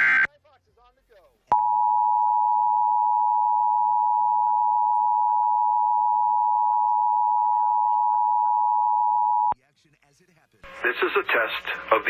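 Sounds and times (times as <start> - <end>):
two-tone alarm: 1.6 - 9.6.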